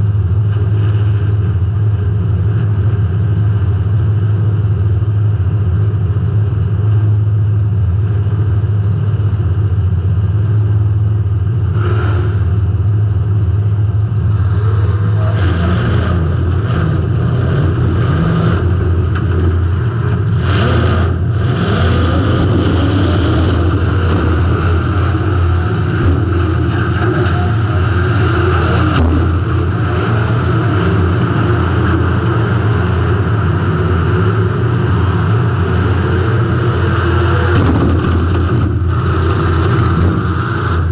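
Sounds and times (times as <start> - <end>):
car engine revving: 8.2 - 40.9.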